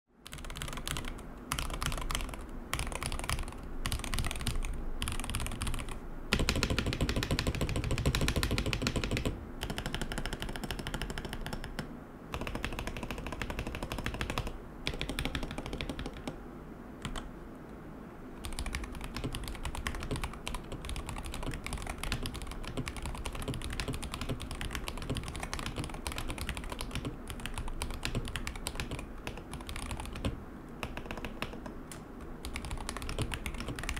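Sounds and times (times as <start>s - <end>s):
mechanical keyboard typing: 0.2s - 16.4s, 17.0s - 17.3s, 18.4s - 33.9s.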